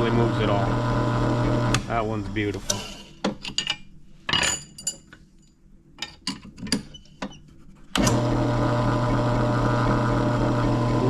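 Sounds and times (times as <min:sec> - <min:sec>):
drill press motor humming: 0:00.0 - 0:03.1, 0:08.0 - 0:11.0.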